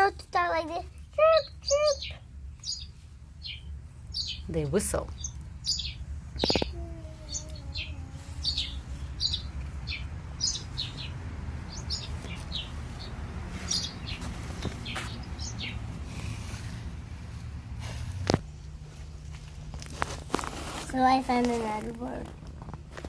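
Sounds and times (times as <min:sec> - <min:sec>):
songbirds chirping: 0:00.0 - 0:20.4
steady low rumble: 0:02.1 - 0:20.5.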